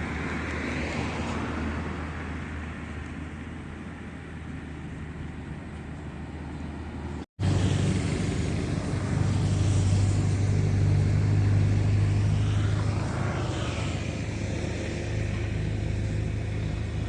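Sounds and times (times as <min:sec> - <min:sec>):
excavator diesel engine running: 0:07.4 - 0:17.0.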